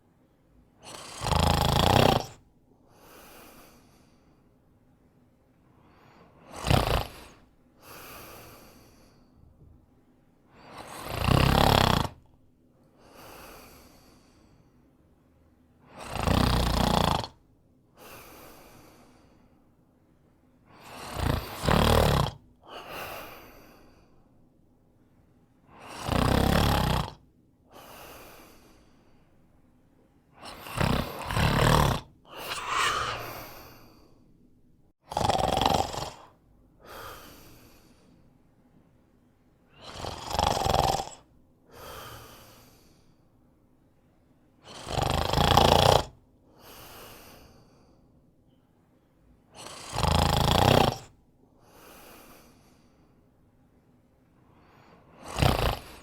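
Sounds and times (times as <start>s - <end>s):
man snoring: 0.8s - 2.4s, 6.3s - 9.1s, 10.6s - 12.3s, 15.9s - 17.4s, 20.8s - 23.7s, 25.7s - 27.2s, 30.4s - 34.1s, 35.0s - 37.8s, 39.8s - 42.9s, 44.7s - 46.2s, 49.6s - 51.2s, 55.1s - 56.0s
quiet breath: 2.2s - 11.0s, 12.2s - 16.2s, 17.3s - 21.6s, 22.5s - 26.1s, 27.4s - 35.0s, 36.1s - 40.1s, 40.8s - 44.8s, 46.4s - 49.8s, 51.0s - 56.0s.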